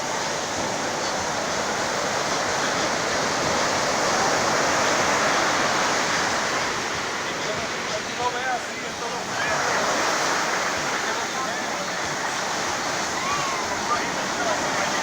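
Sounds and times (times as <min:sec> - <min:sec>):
heavy surf breaking: 0:00.0 - 0:15.0.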